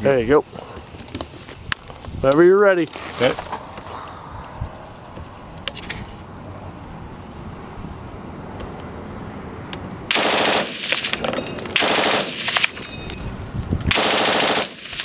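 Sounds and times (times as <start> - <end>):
machine gun automatic bursts: 10.1 - 12.8, 13.9 - 15.0.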